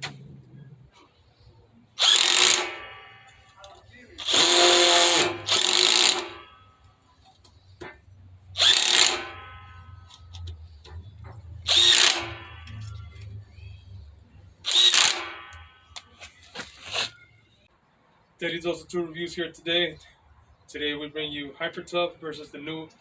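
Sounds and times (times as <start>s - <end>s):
impact driver bursts: 2.0s - 3.5s, 4.2s - 6.6s, 8.6s - 9.6s, 11.1s - 13.0s, 14.6s - 15.7s.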